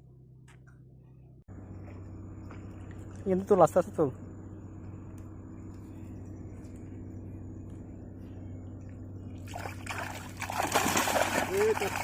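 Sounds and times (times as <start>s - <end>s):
steady low hum: 0.0s - 12.0s
water splashing and trickling: 9.4s - 12.0s.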